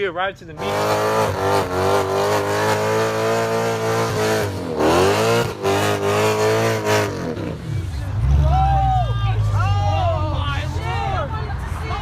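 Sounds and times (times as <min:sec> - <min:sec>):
car engine revving hard: 0:00.6 - 0:08.5.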